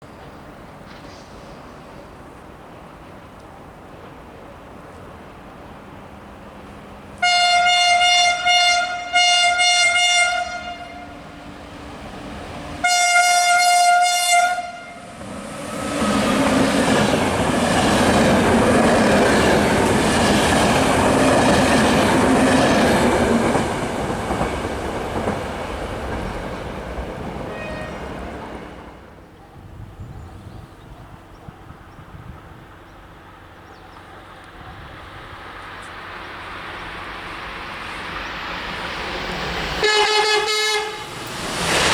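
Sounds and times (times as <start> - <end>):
train passing with wheel noise: 0.0 - 41.9
train horn blasts: 7.2 - 11.3, 12.8 - 15.1, 27.5 - 28.2, 39.8 - 41.2.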